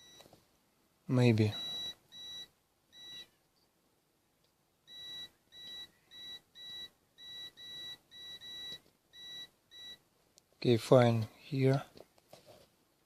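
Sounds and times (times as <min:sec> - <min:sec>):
multimeter beeps: 0:00.0 - 0:00.3, 0:01.5 - 0:03.4, 0:04.9 - 0:10.0.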